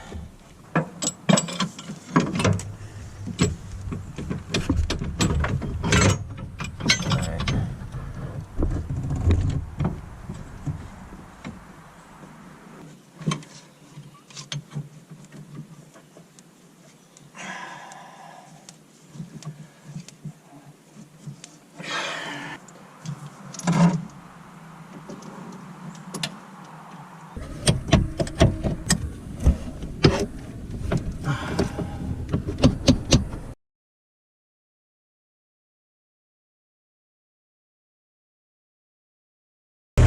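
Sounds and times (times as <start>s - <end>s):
metal fittings and tools clanking: 0.9s - 3.9s, 4.6s - 7.9s
scraping rustle: 1.5s - 17.1s.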